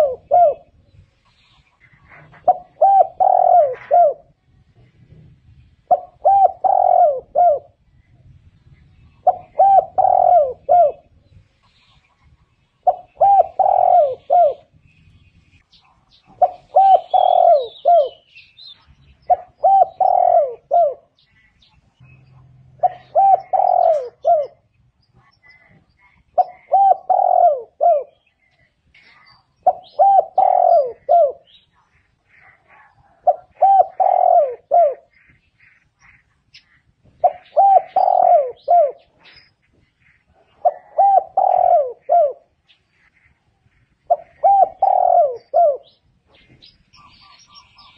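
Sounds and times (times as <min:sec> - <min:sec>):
dove cooing: 0:00.0 - 0:00.9, 0:01.8 - 0:04.4, 0:05.8 - 0:07.8, 0:09.0 - 0:11.2, 0:12.8 - 0:14.7, 0:16.2 - 0:18.3, 0:19.2 - 0:21.3, 0:22.4 - 0:28.7, 0:29.6 - 0:35.4, 0:37.1 - 0:39.4, 0:40.2 - 0:47.9
small birds chirping: 0:00.0 - 0:47.9.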